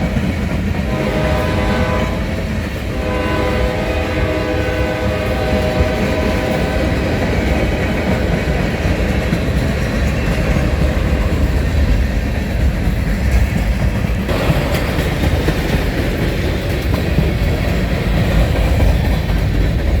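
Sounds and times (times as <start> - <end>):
freight train rumbling past: 0.0 - 20.0
wheels clattering on rails: 0.0 - 20.0
train horn blast: 0.8 - 8.4.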